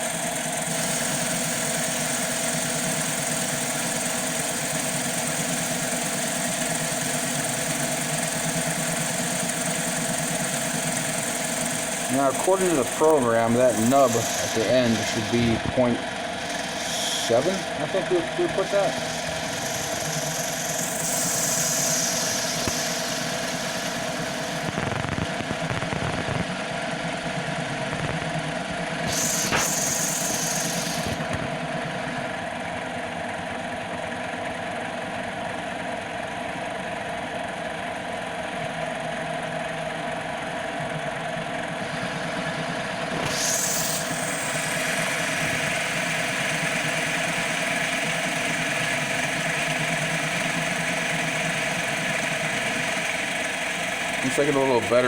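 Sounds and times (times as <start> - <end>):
lathe tool cutting hiss: 0.0 - 25.2, 29.0 - 31.4, 41.6 - 55.0
lathe motor humming: 0.0 - 35.2, 35.8 - 55.0.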